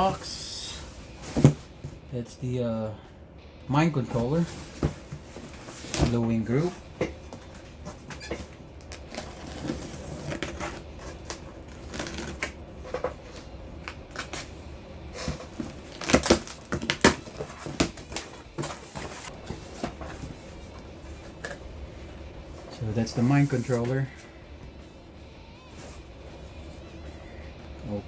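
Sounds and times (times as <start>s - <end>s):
packaging rustles and clicks: 15.2s - 20.6s.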